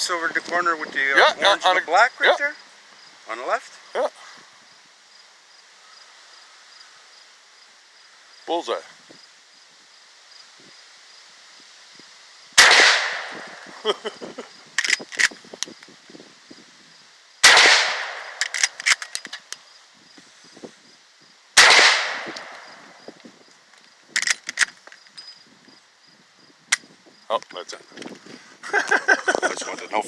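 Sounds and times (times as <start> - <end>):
gunshots echoing: 12.6 - 13.7, 17.4 - 18.8, 21.6 - 22.7.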